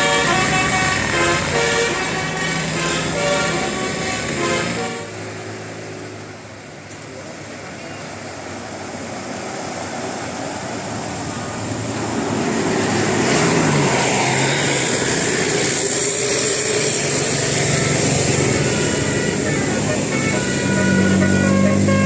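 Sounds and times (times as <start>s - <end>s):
bus engine running: 0.0s - 22.0s.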